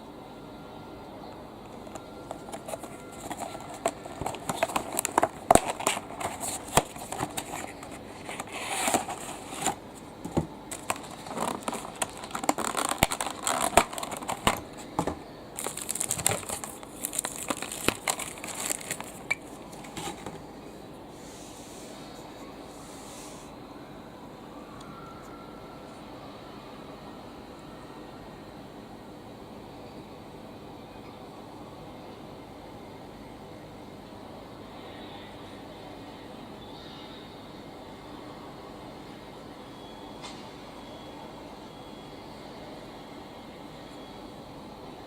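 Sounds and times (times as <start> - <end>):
packaging crinkling: 1.7 - 20.5.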